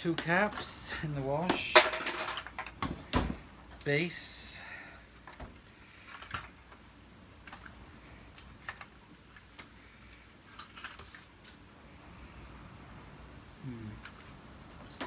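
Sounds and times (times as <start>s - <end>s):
plastic parts clicking and tapping: 0.1s - 0.7s, 1.4s - 3.9s.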